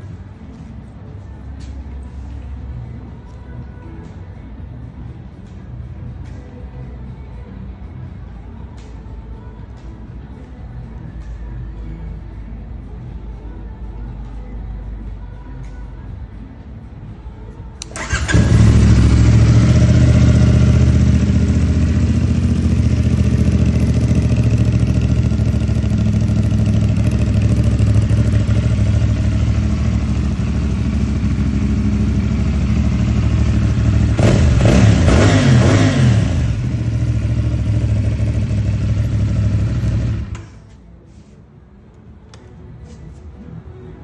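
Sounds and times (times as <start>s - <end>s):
motorcycle engine idling and revving: 17.8s - 40.7s.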